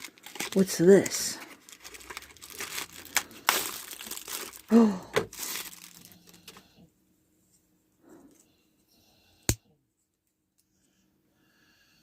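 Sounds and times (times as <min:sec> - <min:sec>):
plastic packaging rustling: 0:00.0 - 0:06.7.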